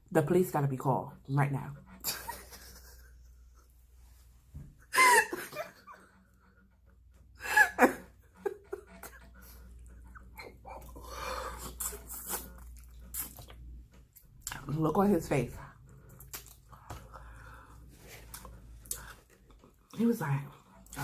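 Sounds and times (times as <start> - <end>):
soft mouth noises: 9.7 - 14.7.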